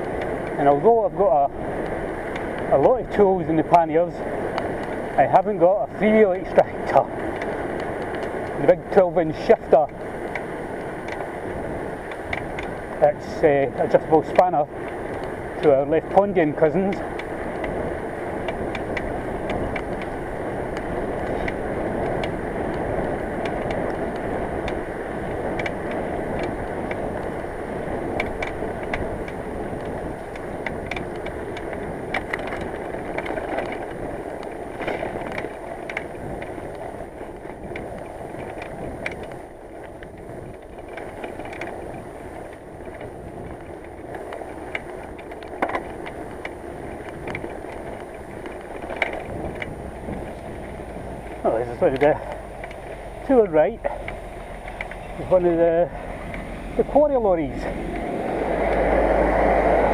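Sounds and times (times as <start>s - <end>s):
wind and tyre rush: 0.0s - 59.9s
sharp clicks and knocks: 12.0s - 17.8s, 18.4s - 27.4s, 28.1s - 59.4s.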